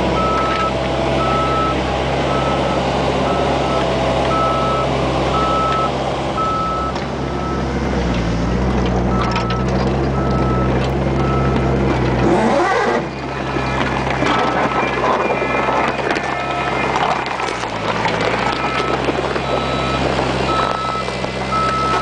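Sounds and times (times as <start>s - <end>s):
diesel engine running: 0.0s - 22.0s
reversing alarm beeps: 0.2s - 7.6s, 9.1s - 11.6s, 13.5s - 17.2s, 18.5s - 22.0s.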